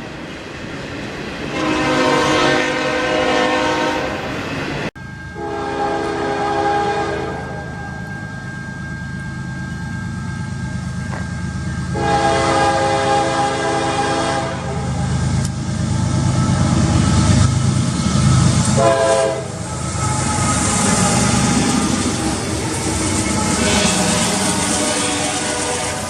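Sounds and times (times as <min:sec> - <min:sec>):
train rumbling: 0:00.0 - 0:26.0
locomotive air horn blasts: 0:01.5 - 0:04.3, 0:05.4 - 0:07.8, 0:11.9 - 0:15.0, 0:18.7 - 0:22.2, 0:23.2 - 0:26.0.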